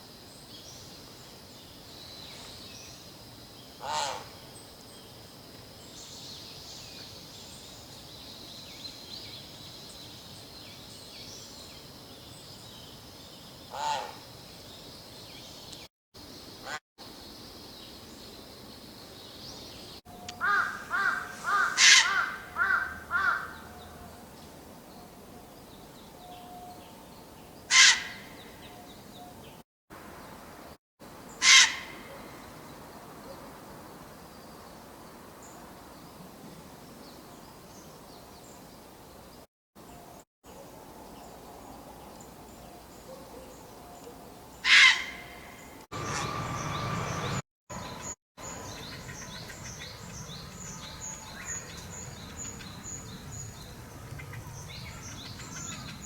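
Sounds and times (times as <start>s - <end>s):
steady outdoor hiss: 0.0s - 56.0s
wild bird calls: 3.8s - 4.4s, 13.7s - 14.2s, 20.4s - 24.0s, 27.7s - 28.8s, 31.4s - 32.5s, 43.1s - 56.0s.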